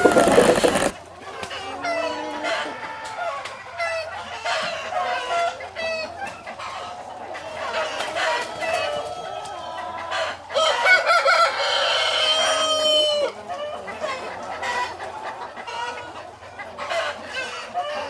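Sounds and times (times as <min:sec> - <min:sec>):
rooster crowing: 0:00.0 - 0:00.9, 0:10.5 - 0:13.4
chickens clucking: 0:00.0 - 0:18.0.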